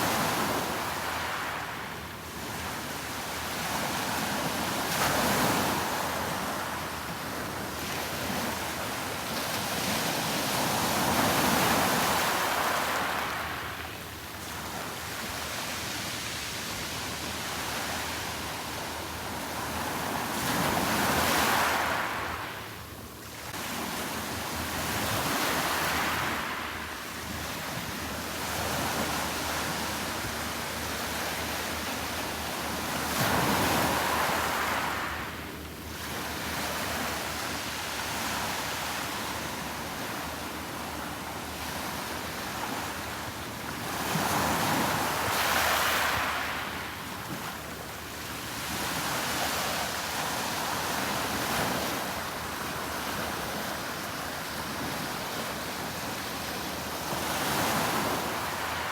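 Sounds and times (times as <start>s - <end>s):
sea waves breaking on beach: 0.0s - 58.9s.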